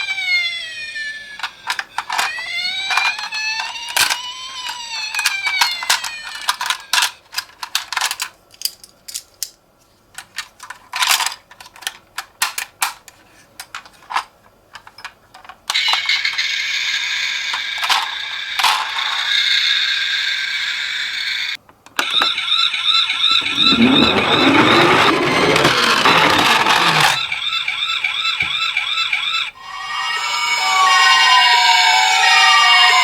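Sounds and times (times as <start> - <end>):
toy siren: 0.0 - 7.2, 15.7 - 33.0
small clicks and clatters: 1.4 - 16.5
shrill electronic tone: 22.8 - 27.6, 29.6 - 33.0.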